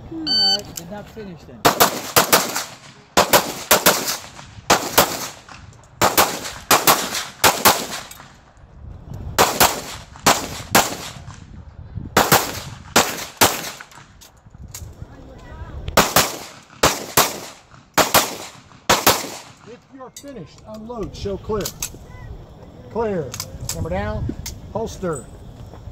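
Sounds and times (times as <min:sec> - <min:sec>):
pistol shots: 0:01.6 - 0:08.3, 0:09.4 - 0:11.4, 0:12.2 - 0:14.0, 0:16.0 - 0:19.7.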